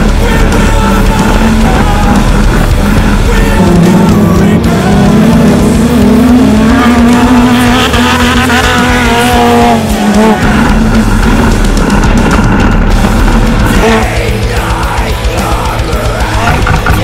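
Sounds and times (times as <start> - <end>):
race car engine revving: 0.0 - 17.0.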